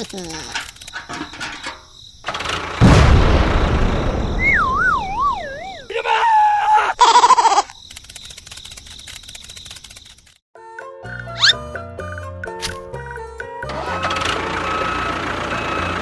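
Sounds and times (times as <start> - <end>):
comic crash: 2.8 - 5.9
wobbling descending whistle: 3.8 - 5.9
squeaky tones: 11.4 - 11.6.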